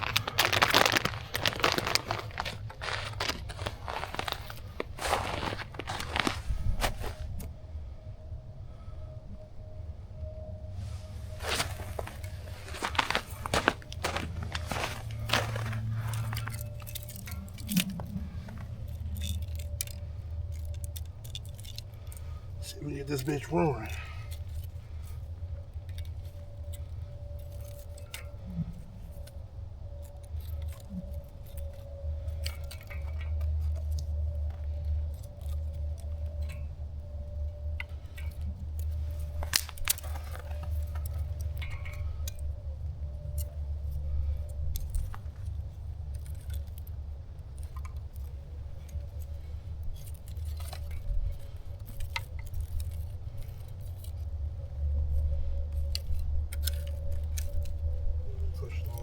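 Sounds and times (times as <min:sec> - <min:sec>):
campfire crackling and popping: 0:00.0 - 0:06.4, 0:37.6 - 0:42.0
low rumble: 0:00.0 - 0:22.6.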